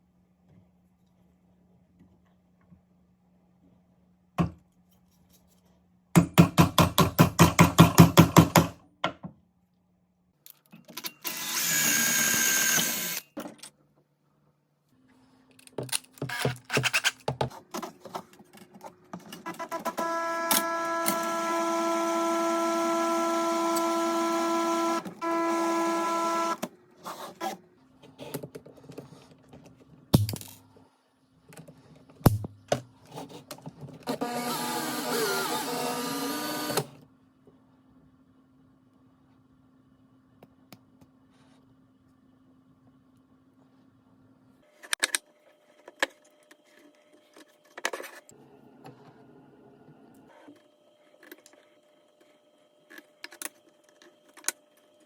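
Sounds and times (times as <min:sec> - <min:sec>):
small motor whirring: 0:11.2 - 0:13.2.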